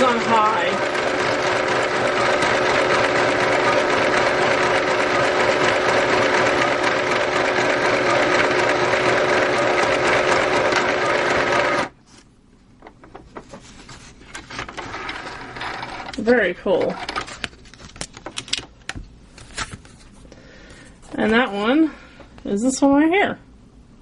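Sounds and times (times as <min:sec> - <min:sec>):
sewing machine whirring: 0:00.0 - 0:12.0, 0:14.4 - 0:17.4.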